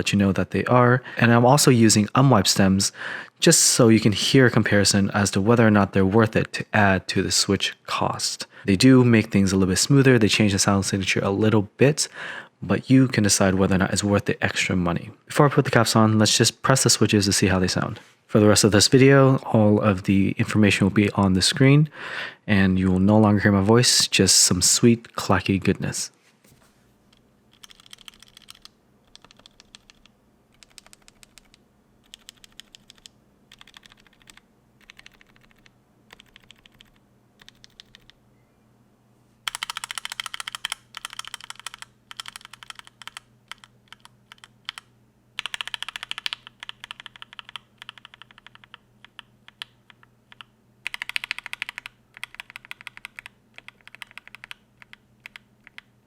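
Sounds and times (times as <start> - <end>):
mechanical keyboard typing: 27.5 - 38.2, 39.5 - 55.9.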